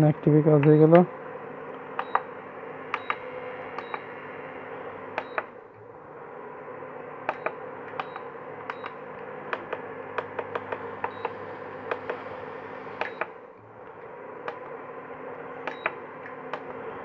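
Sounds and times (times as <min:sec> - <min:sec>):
steady hum: 0:00.0 - 0:17.0.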